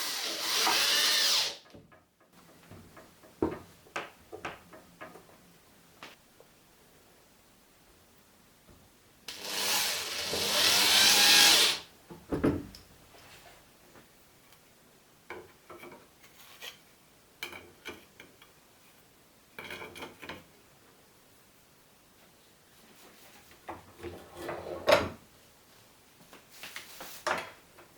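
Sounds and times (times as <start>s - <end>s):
power tool running: 0.0s - 1.6s, 9.3s - 11.8s.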